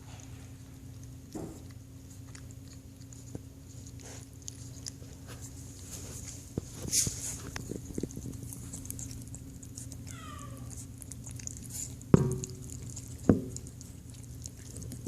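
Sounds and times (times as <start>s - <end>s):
pet chewing: 0.0s - 15.0s
sharp knocks: 12.2s - 13.7s.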